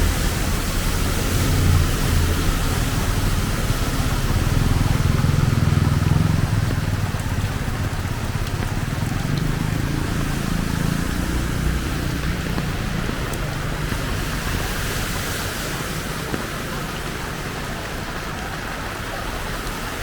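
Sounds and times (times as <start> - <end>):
heavy rain hissing: 0.0 - 20.0
passing vehicle engine rumble: 0.0 - 20.0.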